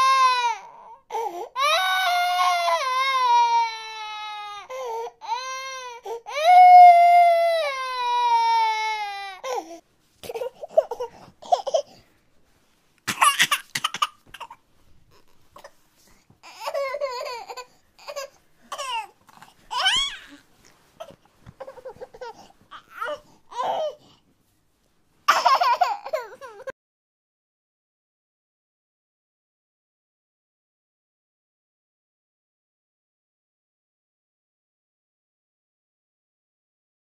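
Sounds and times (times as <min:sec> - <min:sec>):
baby crying: 0:00.0 - 0:11.9, 0:16.4 - 0:20.4, 0:21.0 - 0:24.0, 0:25.3 - 0:26.7
baby giggling and babbling: 0:10.2 - 0:11.9, 0:16.4 - 0:20.4, 0:21.0 - 0:24.0, 0:25.3 - 0:26.7.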